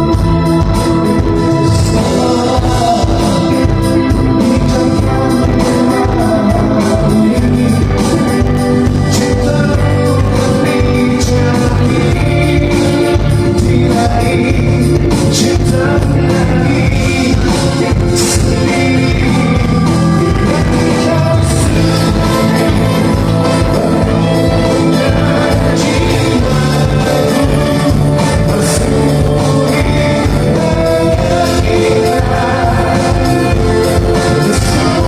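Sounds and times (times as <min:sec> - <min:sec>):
live band playing: 0:00.0 - 0:35.0
steady drum beat: 0:00.0 - 0:35.0
person singing: 0:00.8 - 0:35.0.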